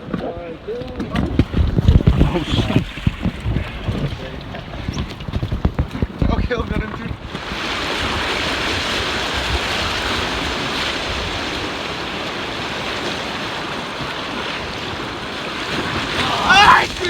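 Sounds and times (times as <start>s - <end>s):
river water rushing through rapids: 15.4s - 17.0s.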